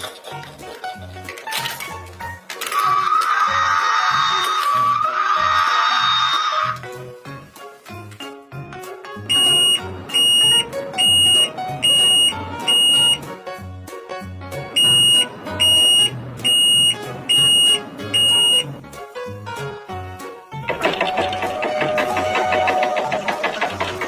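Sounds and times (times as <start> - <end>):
background music: 0.0 - 24.0
high electronic alarm beeps: 9.3 - 13.2, 14.8 - 18.7.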